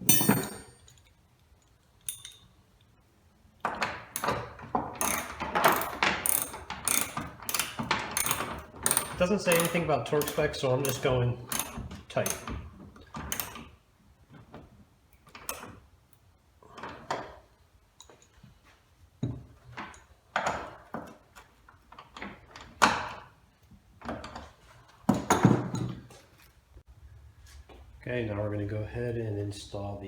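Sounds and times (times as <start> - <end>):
metal tools clanking and rattling: 0.0 - 1.2, 2.0 - 2.6, 3.7 - 13.7.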